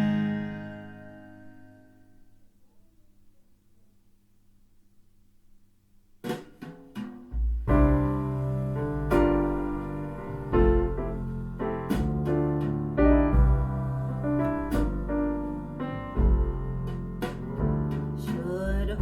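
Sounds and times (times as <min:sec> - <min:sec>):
piano music over loudspeakers: 0:00.0 - 0:01.8, 0:07.7 - 0:19.0.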